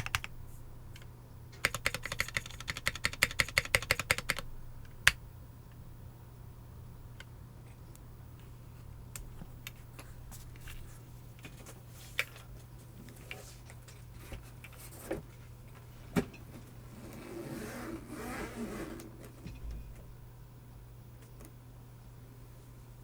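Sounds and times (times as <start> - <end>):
jumbled keyboard clatter: 0.0 - 0.3, 1.6 - 4.5
mechanical keyboard keystrokes: 0.0 - 0.3, 1.0 - 5.2.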